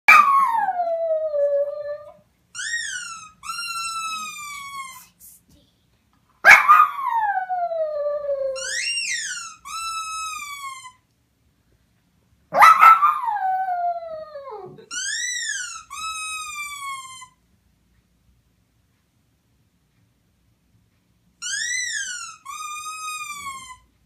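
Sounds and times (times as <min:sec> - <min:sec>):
puppy howling whines: 0:00.1 - 0:05.0, 0:06.7 - 0:11.0, 0:12.6 - 0:17.4, 0:21.4 - 0:23.9.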